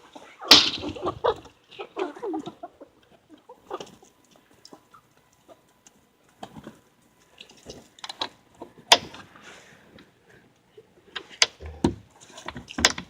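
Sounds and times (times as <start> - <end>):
chickens clucking softly: 0.0 - 9.0.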